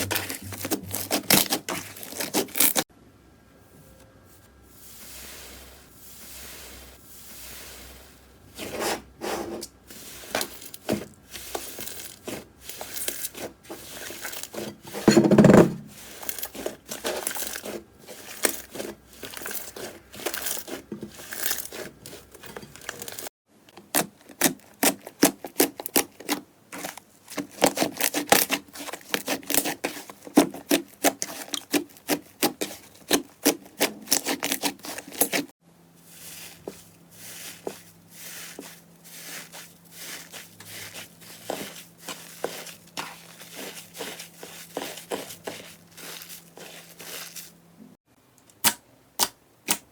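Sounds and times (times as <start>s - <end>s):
hands squishing slime: 0.0s - 2.8s, 15.9s - 35.5s, 36.1s - 47.6s.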